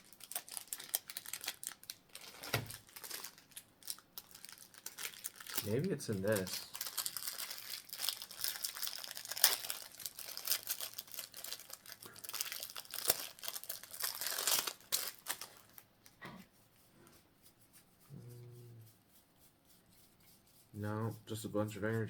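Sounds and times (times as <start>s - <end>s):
plastic wrapping tearing and crinkling: 0.0s - 16.2s.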